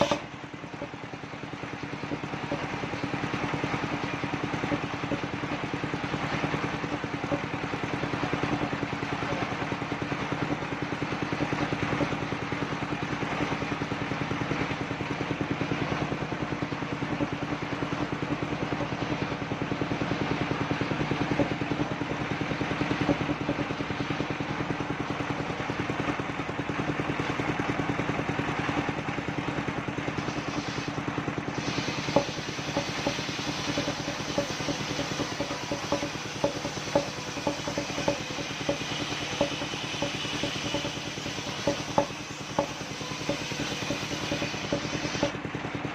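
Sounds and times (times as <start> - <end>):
sharp knocks and clatters: 0.0 - 13.6, 15.6 - 24.4, 31.6 - 45.4
sawmill engine running: 0.0 - 45.9.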